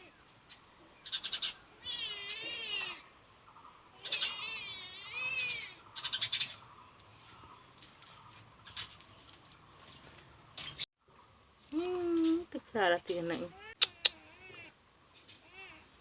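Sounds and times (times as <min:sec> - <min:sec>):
cat meowing: 0:13.5 - 0:14.7, 0:15.4 - 0:15.9.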